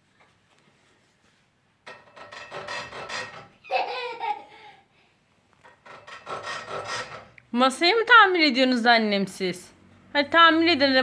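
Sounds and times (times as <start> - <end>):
hand tool scraping wood: 1.9 - 3.6, 5.6 - 7.4.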